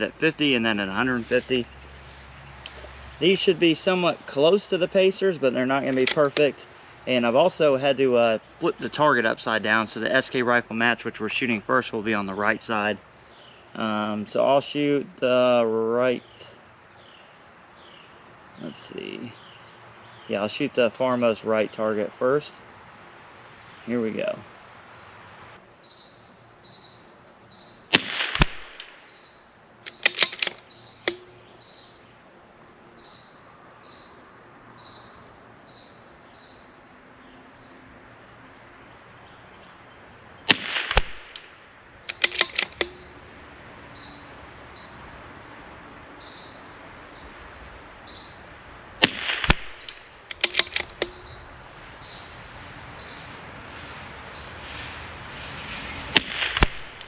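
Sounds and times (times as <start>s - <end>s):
crickets chirping: 0.0s - 57.0s
rifle shots: 27.9s - 29.0s, 29.9s - 31.3s, 40.4s - 41.5s, 49.0s - 51.2s, 56.1s - 57.0s
rifle bolt clicks: 29.9s - 31.3s, 40.5s - 41.5s, 42.1s - 43.0s, 49.0s - 51.2s.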